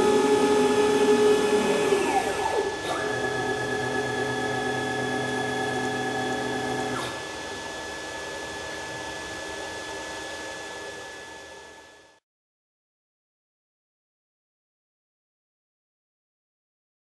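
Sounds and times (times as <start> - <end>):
cnc router humming: 0.0 - 12.1.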